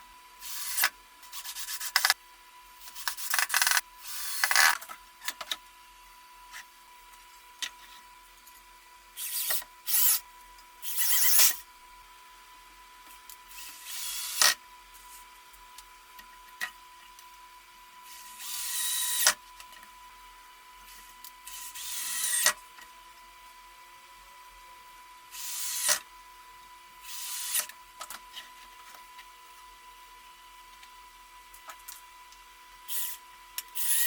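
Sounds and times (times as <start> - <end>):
electric drill drilling into wood: 0.4 - 0.9, 3.0 - 4.8, 10.8 - 11.6, 13.6 - 14.5, 18.1 - 19.3, 25.4 - 26.0, 27.1 - 27.7.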